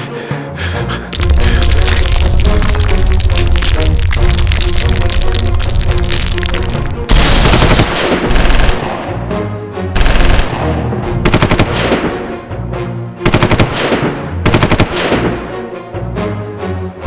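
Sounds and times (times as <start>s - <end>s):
background music: 0.0s - 17.0s
loud burst of noise: 1.1s - 8.8s
machine-gun fire: 7.1s - 9.1s, 10.0s - 10.7s, 11.3s - 12.2s, 13.3s - 15.3s.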